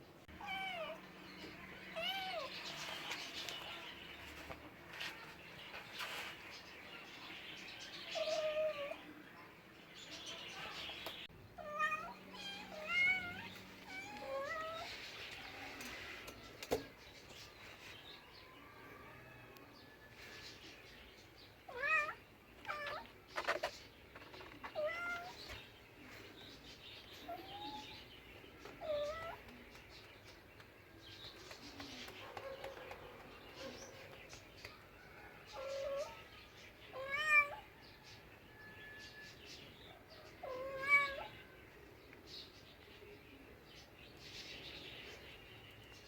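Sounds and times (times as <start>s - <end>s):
cat meowing: 0.4s - 1.0s, 11.6s - 14.9s, 21.7s - 23.1s, 24.7s - 25.4s, 36.9s - 37.6s, 40.4s - 41.3s.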